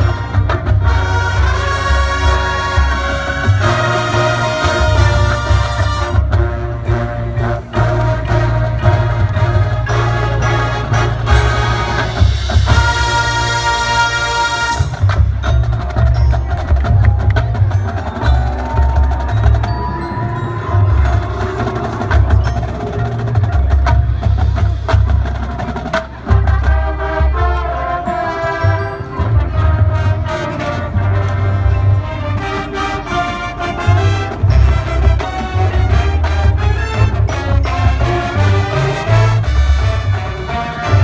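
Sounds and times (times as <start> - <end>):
marching band playing: 0.0 - 41.0
marimba and bells: 0.0 - 41.0
wood block: 15.0 - 24.9.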